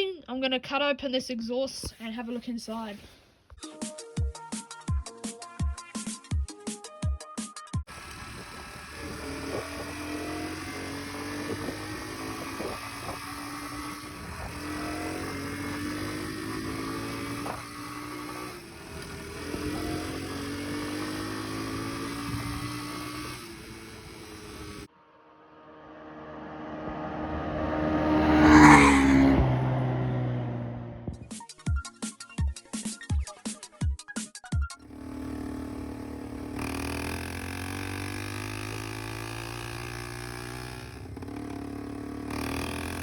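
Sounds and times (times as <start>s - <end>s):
motorbike engine accelerating: 7.9s - 24.9s, 25.9s - 31.4s, 34.8s - 43.0s
motorbike passing by: 7.9s - 24.9s, 25.5s - 31.2s, 34.8s - 43.0s.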